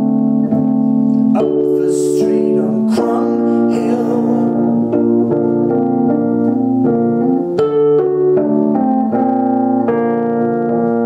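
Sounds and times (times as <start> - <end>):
electric keyboard chords: 0.0 - 11.0.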